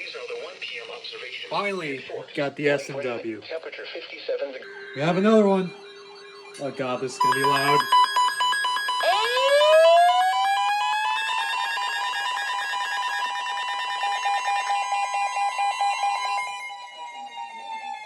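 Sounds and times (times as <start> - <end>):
alert siren wailing: 4.6 - 18.0
beeping alarm tones: 4.6 - 18.0.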